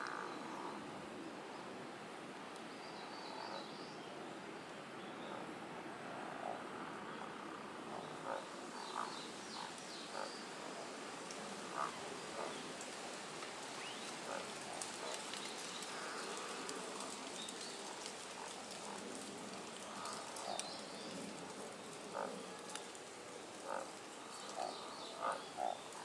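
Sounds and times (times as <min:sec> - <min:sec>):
frogs croaking: 0:00.0 - 0:26.0.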